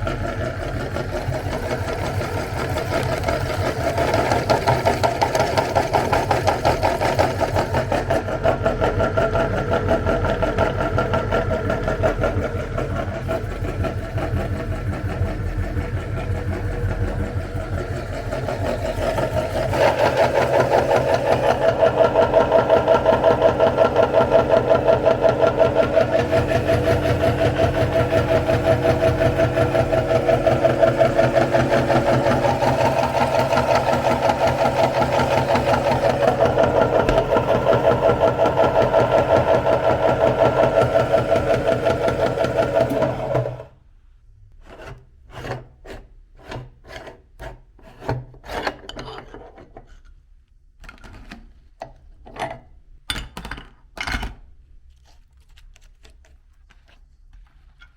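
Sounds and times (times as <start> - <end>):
electric meat grinder running: 0.0 - 43.8.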